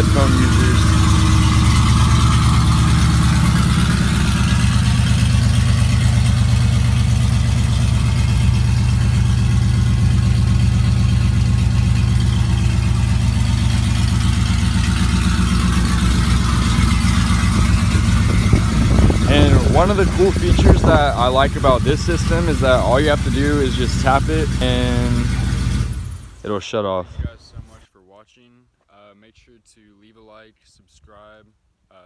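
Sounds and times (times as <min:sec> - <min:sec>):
loud truck engine idling: 0:00.0 - 0:26.4.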